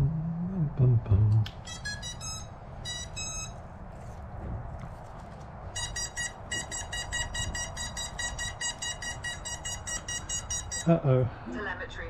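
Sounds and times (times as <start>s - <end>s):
outdoor rumble: 0.0s - 12.0s
electronic high beeps: 1.6s - 3.6s, 5.8s - 11.0s.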